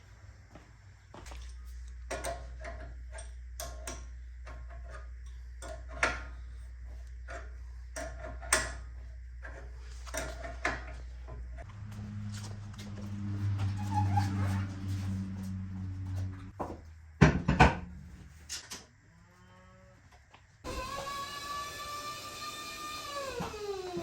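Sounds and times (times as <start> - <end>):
steady low hum: 0.0 - 19.1.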